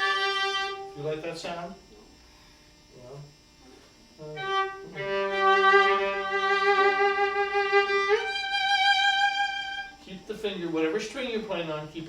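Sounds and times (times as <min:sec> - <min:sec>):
viola bowed notes: 0:00.0 - 0:01.8, 0:04.2 - 0:10.0.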